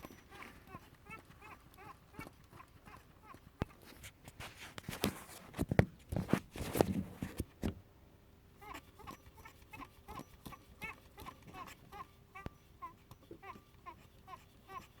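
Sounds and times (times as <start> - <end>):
pump squeaking in chirps: 0.0 - 2.3, 8.6 - 15.0.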